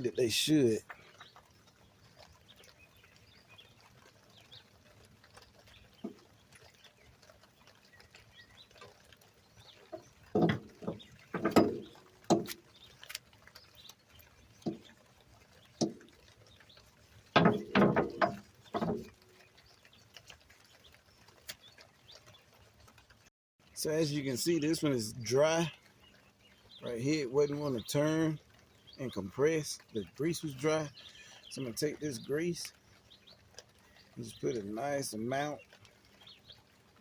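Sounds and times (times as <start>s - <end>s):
guide pins clicking and squeaking: 9.9s - 13.2s, 17.4s - 19.2s.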